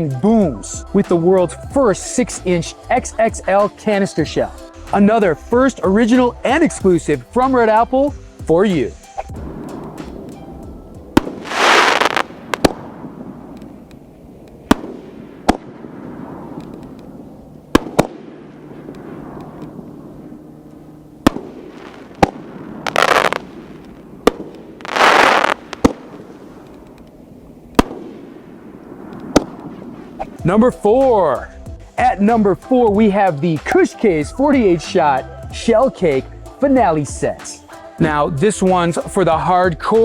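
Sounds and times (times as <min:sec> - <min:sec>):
firework booms: 0:09.3 - 0:20.4, 0:21.2 - 0:30.5
hissing crackling firework bursts: 0:11.2 - 0:13.9, 0:21.2 - 0:26.9.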